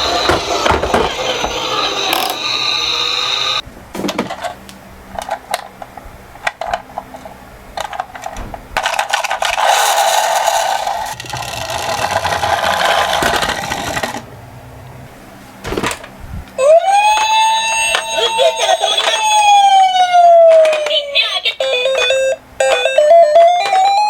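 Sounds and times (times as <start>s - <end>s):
toy cars clicking and knocking: 7.8s - 14.2s
toy car wheels rattling whir: 8.8s - 14.3s.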